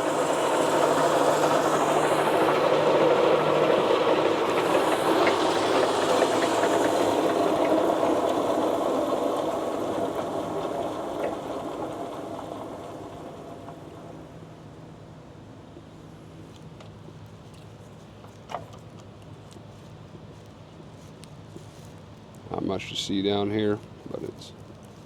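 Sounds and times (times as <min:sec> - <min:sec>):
lathe whirring: 0:00.0 - 0:15.2.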